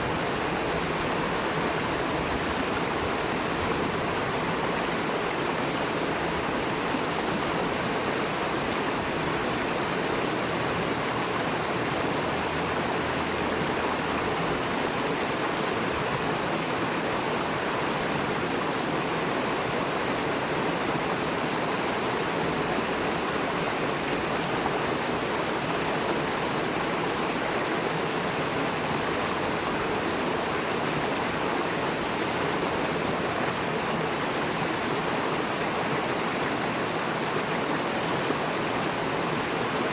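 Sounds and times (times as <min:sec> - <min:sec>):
river water rushing over rocks: 0:00.0 - 0:39.9.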